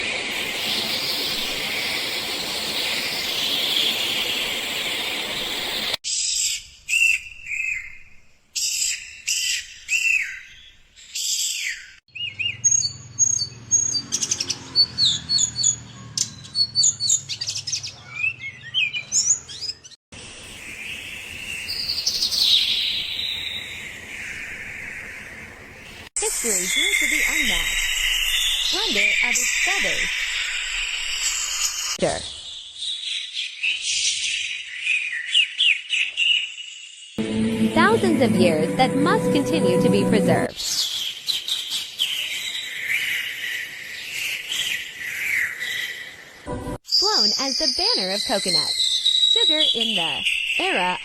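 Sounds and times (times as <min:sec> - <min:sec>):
rapid high bird chirps: 0:00.4 - 0:07.9, 0:20.6 - 0:25.2, 0:26.3 - 0:37.2, 0:46.9 - 0:51.0
birds calling and singing: 0:08.6 - 0:25.5, 0:26.4 - 0:36.9, 0:40.6 - 0:51.0
low hum: 0:37.2 - 0:40.5.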